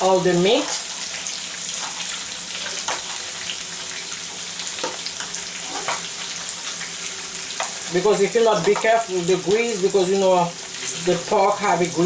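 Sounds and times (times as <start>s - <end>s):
meat deep-frying in oil: 0.0s - 12.0s
oil crackles and pops: 0.5s - 9.6s.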